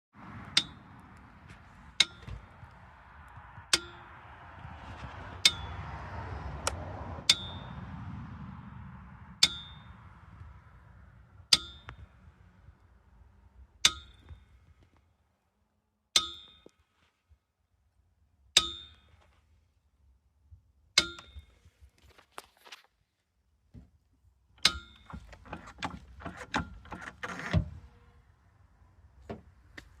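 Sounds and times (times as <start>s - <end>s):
jack clicking and knocking: 24.6s - 27.7s.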